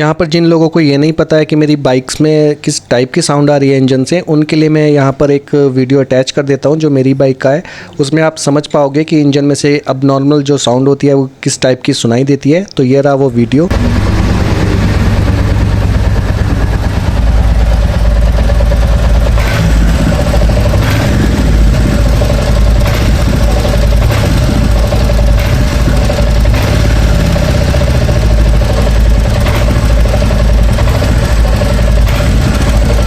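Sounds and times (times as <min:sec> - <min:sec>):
engine clattering knocks: 0:13.7 - 0:33.0
motorcycle engine running: 0:13.7 - 0:33.0
steady whine: 0:13.7 - 0:33.0.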